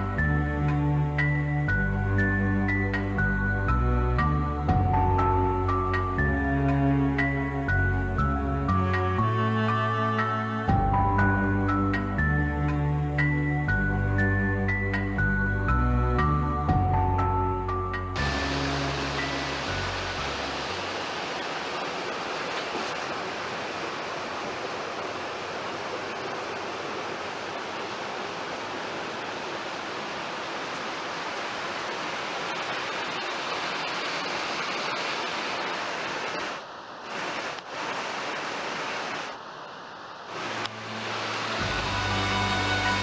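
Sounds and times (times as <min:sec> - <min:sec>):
mountain stream rushing: 0:18.2 - 0:43.0.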